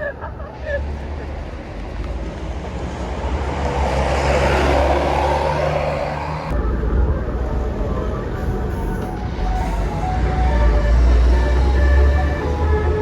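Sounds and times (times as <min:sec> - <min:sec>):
low engine rumble: 0:00.0 - 0:13.0
vehicle passing close by: 0:01.0 - 0:06.6.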